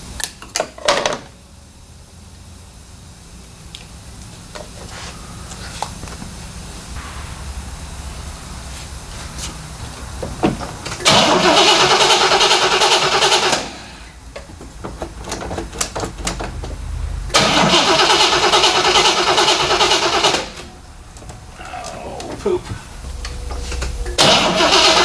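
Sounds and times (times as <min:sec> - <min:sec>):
car engine cranking: 0:10.6 - 0:14.0, 0:15.1 - 0:25.0.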